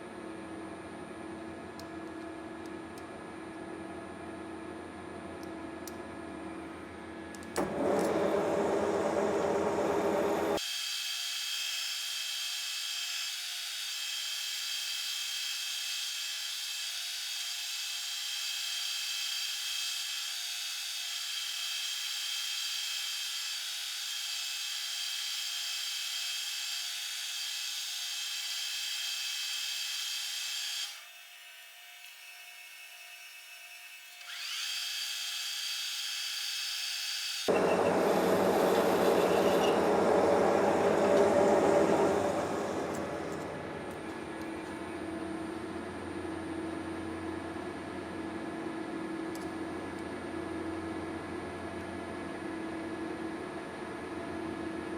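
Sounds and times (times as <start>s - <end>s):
machine tool high whine: 7.6s - 11.0s, 37.2s - 45.8s.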